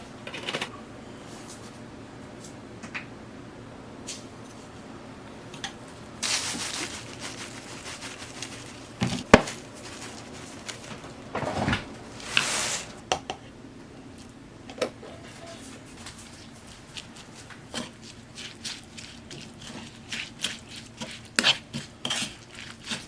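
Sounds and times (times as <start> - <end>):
dishes and utensils moved: 14.7 - 15.8.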